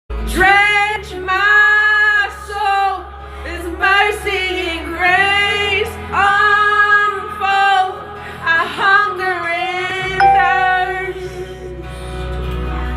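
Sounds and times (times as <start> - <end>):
low steady accompaniment: 10.2 - 11.5.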